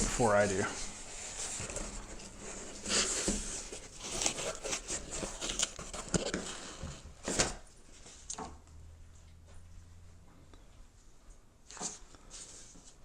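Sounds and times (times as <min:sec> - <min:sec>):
cardboard rustling and scraping: 0:00.0 - 0:08.4
cardboard box being opened: 0:00.9 - 0:07.6.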